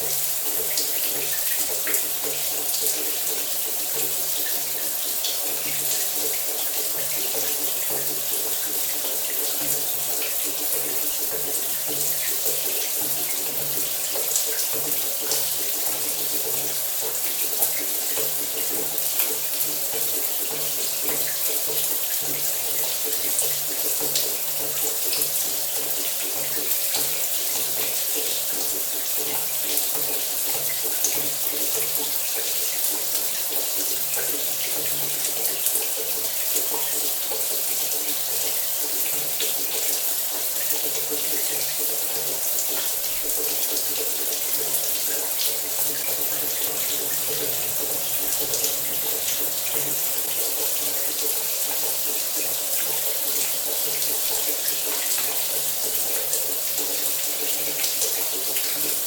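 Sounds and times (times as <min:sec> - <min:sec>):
shower water spraying: 0:42.6 - 0:52.0.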